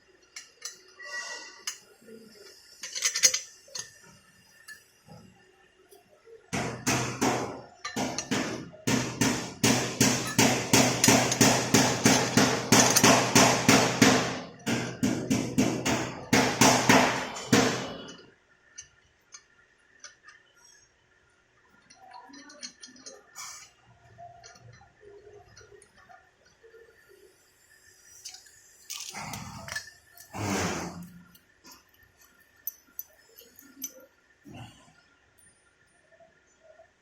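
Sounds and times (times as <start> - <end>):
metal parts clinking: 0.2 - 4.9, 9.8 - 13.3, 21.8 - 26.1, 28.1 - 30.4, 31.0 - 34.1.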